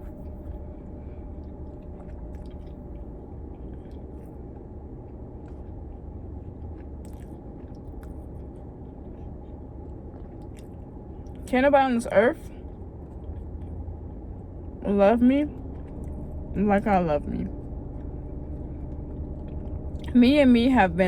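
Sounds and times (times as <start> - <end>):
steady low hum: 0.0 - 21.0
person chewing food: 0.1 - 11.5, 12.5 - 14.8, 17.6 - 20.2
wet mouth clicks: 6.8 - 9.5.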